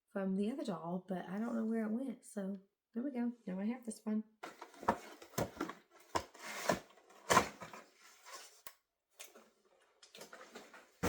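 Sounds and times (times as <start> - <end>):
packaging rustling: 4.4 - 8.6.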